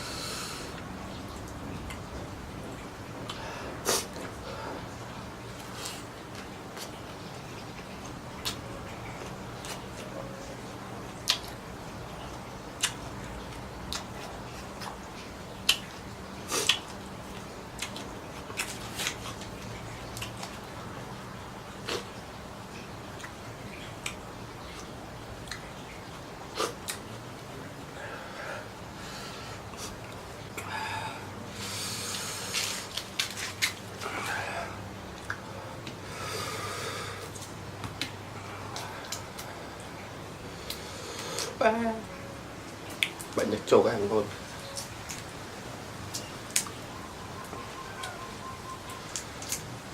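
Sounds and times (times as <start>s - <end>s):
low steady hum: 0.0s - 49.9s
person chewing: 8.0s - 10.2s, 12.8s - 20.6s, 21.8s - 22.2s
mouth smacks and clicks: 11.2s - 11.6s, 12.8s - 13.0s, 16.5s - 19.5s, 24.8s - 25.8s, 26.5s - 27.1s, 42.9s - 43.4s
crunching while eating: 12.8s - 20.7s, 21.8s - 22.1s, 31.6s - 34.4s, 48.9s - 49.8s.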